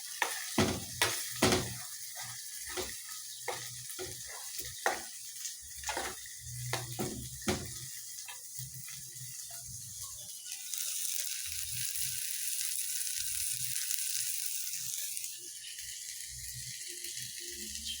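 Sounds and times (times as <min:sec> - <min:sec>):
food sizzling in a pan: 0:00.0 - 0:18.0
light knocks: 0:00.6 - 0:01.8, 0:06.8 - 0:07.8.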